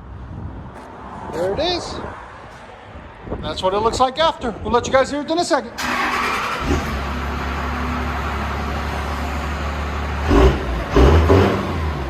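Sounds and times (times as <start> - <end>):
diesel truck engine idling: 5.8 - 12.0
engine revving: 5.8 - 12.0.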